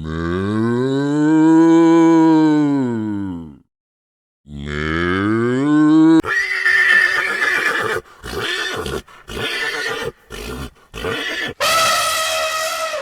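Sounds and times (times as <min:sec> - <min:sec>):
horse neighing and snorting: 0:06.2 - 0:13.0
horse whinnying: 0:06.2 - 0:13.0.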